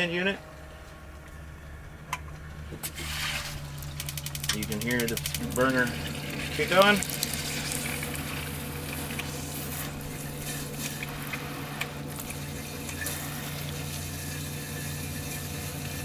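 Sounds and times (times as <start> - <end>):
pump humming: 0.0 - 16.0
gas burner: 2.1 - 16.0
water running from shower head: 3.0 - 16.0.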